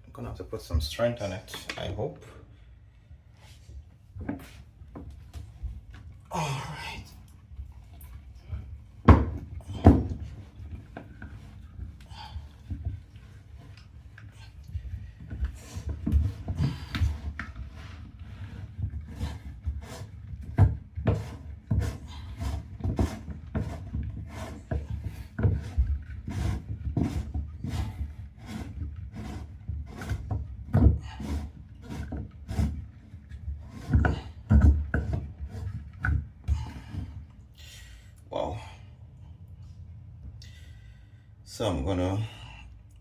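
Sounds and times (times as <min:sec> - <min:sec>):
hand tool scraping metal drain: 0:09.4 - 0:37.3.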